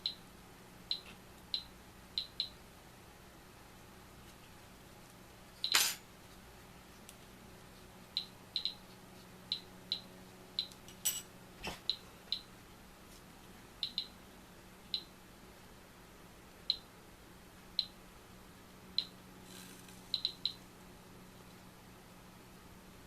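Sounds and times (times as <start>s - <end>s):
small metal and glass parts clinking: 10.9s - 11.3s.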